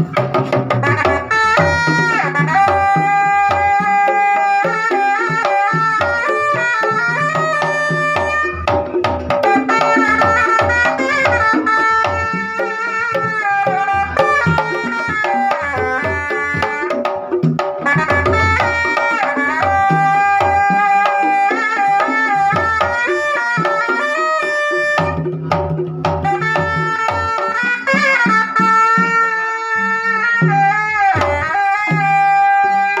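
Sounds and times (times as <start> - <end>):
hand drums beating: 0.0 - 33.0
shrill reedy wind melody: 0.8 - 25.5.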